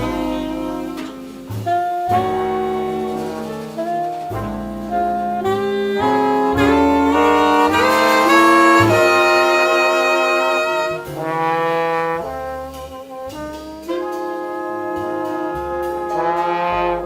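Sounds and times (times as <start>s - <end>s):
bass: 0.0s - 17.0s
piano: 0.0s - 17.0s
saxophone melody: 0.0s - 17.0s.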